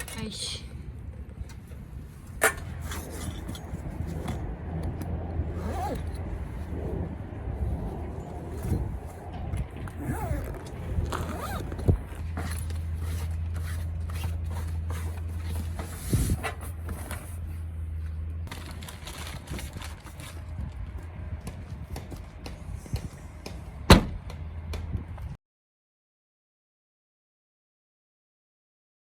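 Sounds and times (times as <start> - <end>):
vehicle engine hum: 0.0 - 25.4.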